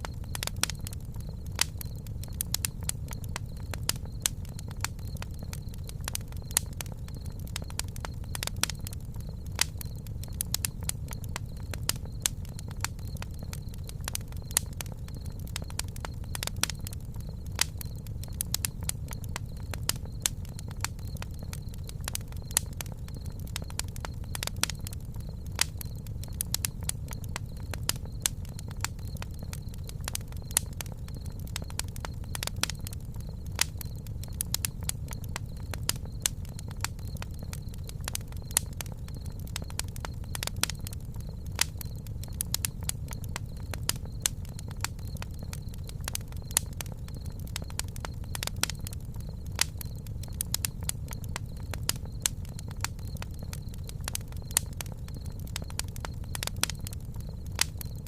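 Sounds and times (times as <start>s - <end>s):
campfire crackling and popping: 0.0s - 58.0s
low fire rumble: 0.0s - 58.0s.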